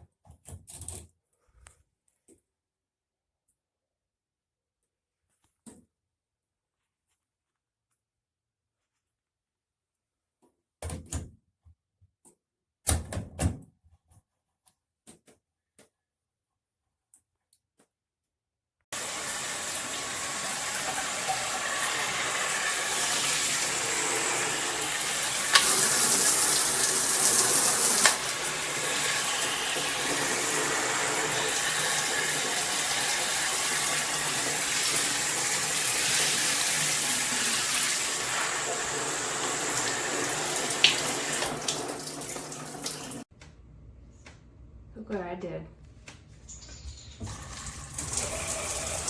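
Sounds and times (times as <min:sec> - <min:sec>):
water spraying from shower head: 0:19.0 - 0:43.2.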